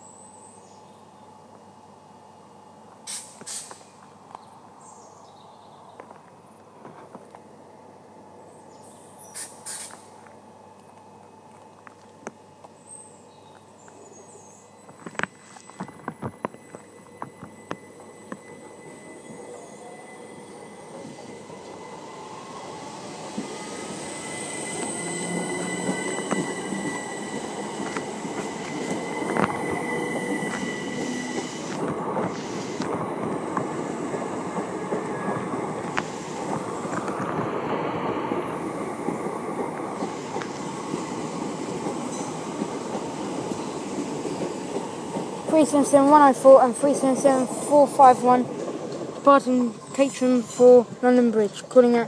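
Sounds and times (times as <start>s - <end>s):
electric train whine: 0.0s - 52.0s
wheels squealing: 14.8s - 37.2s.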